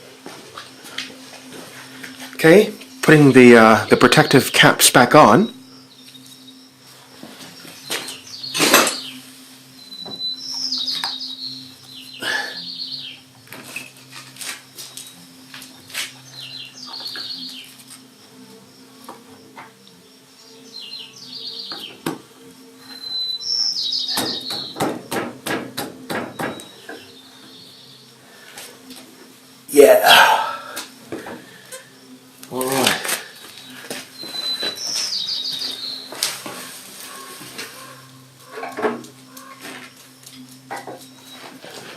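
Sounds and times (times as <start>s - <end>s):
songbird singing trills: 2.4s - 25.0s, 26.1s - 28.5s, 31.4s - 38.6s
sharp taps and knocks: 24.2s - 26.7s.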